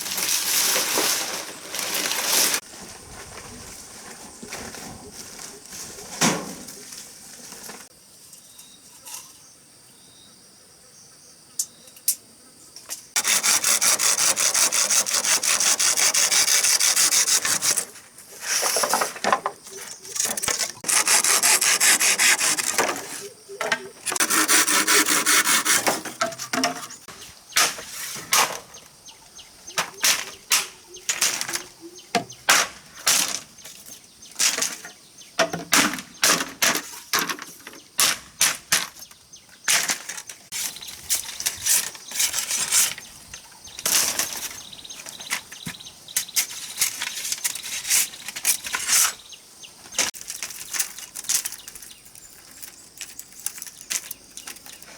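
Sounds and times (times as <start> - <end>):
hand saw rasping wood: 13.2 - 18.9, 20.2 - 23.3, 24.0 - 26.4
knocks and scrapes on wood: 17.3 - 28.8.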